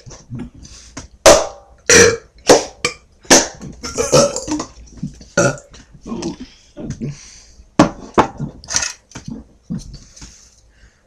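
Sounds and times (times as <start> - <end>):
person burping: 1.9 - 3.0, 3.8 - 4.8, 5.4 - 7.2.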